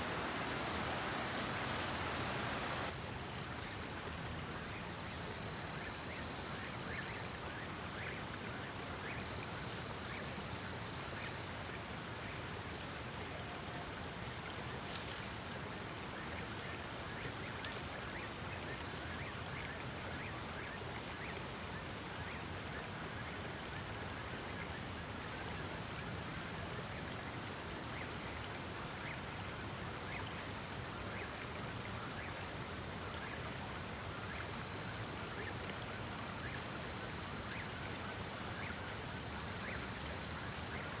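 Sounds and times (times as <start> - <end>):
creek water rushing: 0.0 - 5.1.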